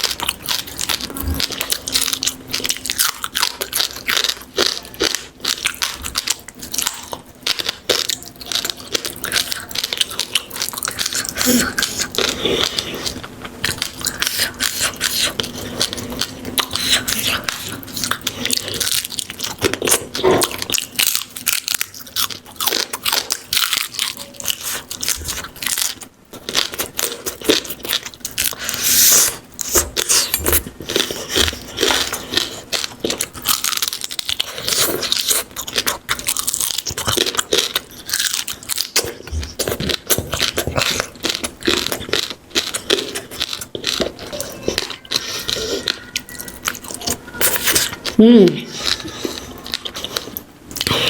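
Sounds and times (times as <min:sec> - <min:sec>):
crunching and chewing: 0:00.0 - 0:51.0.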